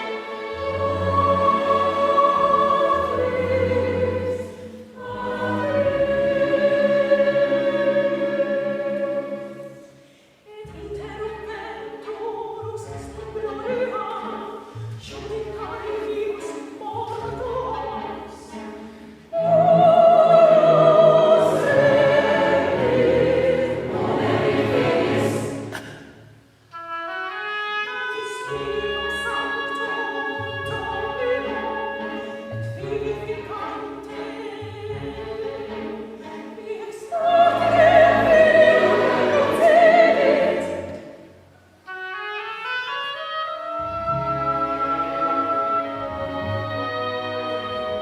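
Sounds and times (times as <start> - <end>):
voices singing: 0.0 - 9.9, 19.4 - 25.9, 28.4 - 41.3
chamber orchestra: 0.0 - 48.0.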